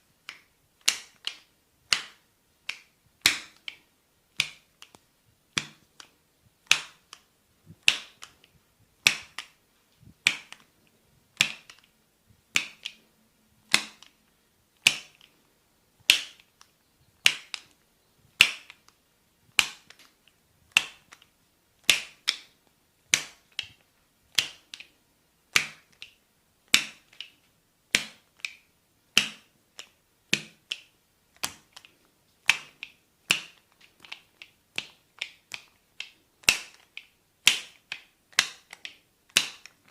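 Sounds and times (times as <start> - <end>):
snapping clicks from back massage: 18.4 - 19.0, 29.2 - 39.9.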